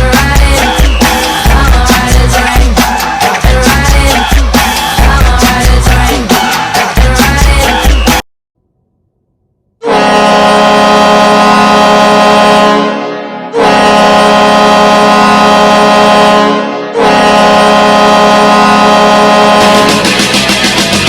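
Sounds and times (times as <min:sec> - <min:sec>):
arena goal horn blasts: 0:09.8 - 0:20.0.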